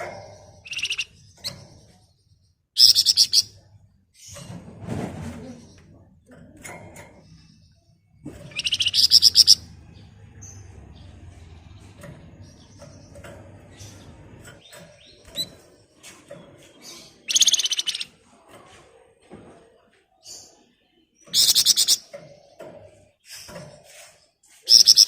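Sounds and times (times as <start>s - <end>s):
songbird rattling trill: 0.0s - 1.7s, 2.8s - 3.5s, 8.5s - 9.7s, 16.6s - 18.1s, 21.3s - 22.4s, 24.6s - 25.0s
bird chirps: 0.0s - 4.4s, 7.2s - 18.2s, 20.3s - 25.0s.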